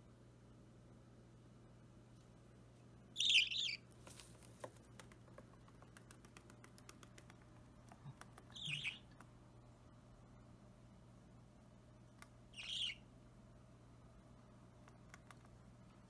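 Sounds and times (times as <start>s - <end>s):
budgerigar chick begging calls: 3.2s - 3.8s, 12.6s - 13.0s
faint small clicks: 14.8s - 15.6s.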